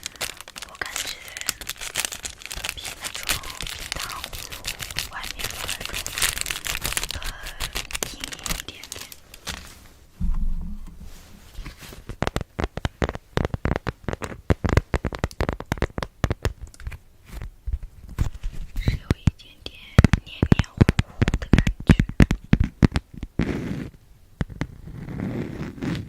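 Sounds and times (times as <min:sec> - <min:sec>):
wax cloth crinkling: 0:00.0 - 0:15.9
low rub: 0:09.7 - 0:12.1.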